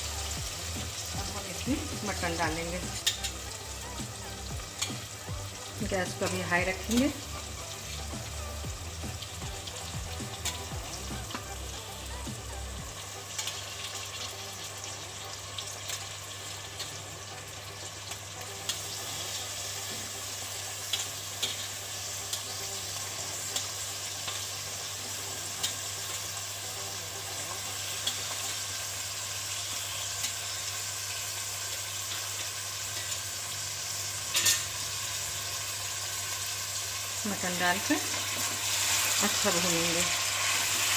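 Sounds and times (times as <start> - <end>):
meat sizzling in hot oil: 0.0 - 40.9.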